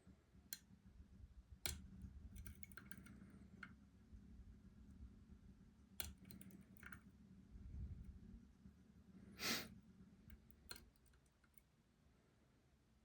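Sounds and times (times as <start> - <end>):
short breathy hiss: 9.4 - 9.7.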